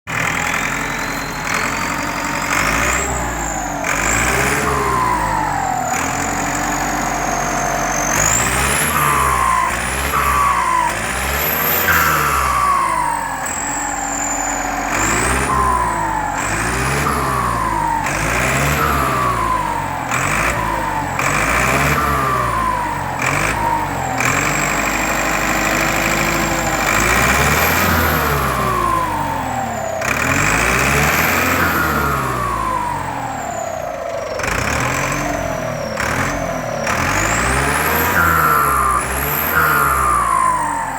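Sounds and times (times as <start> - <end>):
diesel truck engine revving: 0.0 - 40.9
turbo whistle: 4.3 - 19.9, 31.2 - 33.0, 37.5 - 40.9.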